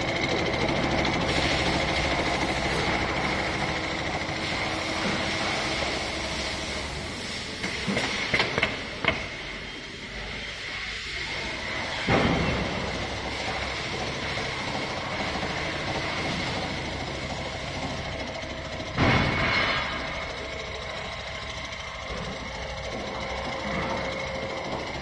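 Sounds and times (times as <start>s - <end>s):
sewing machine whining: 0.0s - 8.3s, 9.0s - 25.0s
sudden burst of noise: 19.0s - 20.5s.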